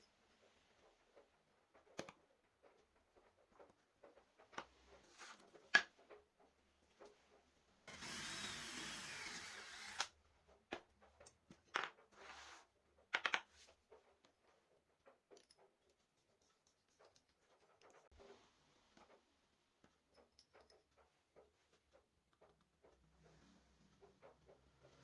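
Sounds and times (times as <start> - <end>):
small power tool running: 7.9 - 10.1.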